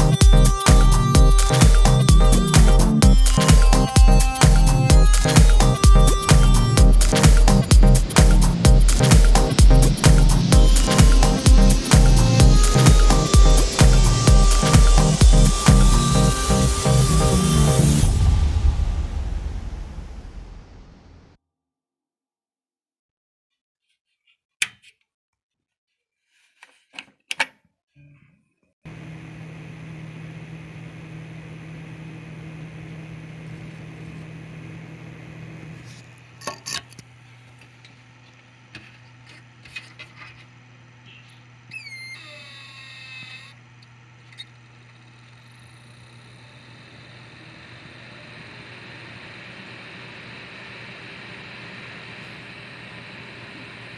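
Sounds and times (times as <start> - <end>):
computer cooling fans humming: 0.0 - 18.5.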